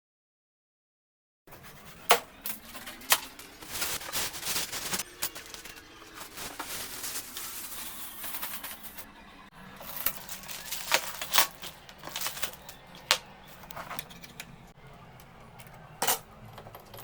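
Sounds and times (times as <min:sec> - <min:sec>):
packaging crinkling and scraping: 0:01.5 - 0:14.6.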